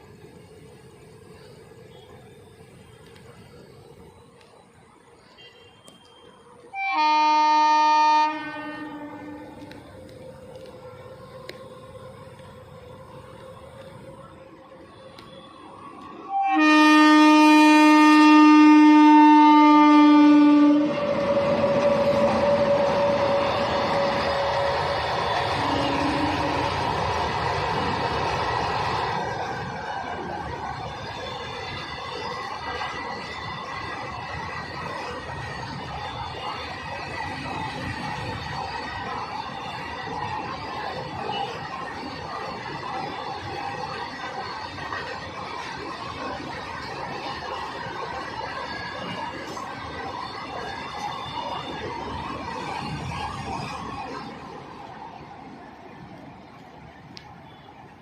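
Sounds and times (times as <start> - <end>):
passing train running: 0.0 - 58.0
locomotive horn blast: 5.4 - 9.8, 16.3 - 27.0.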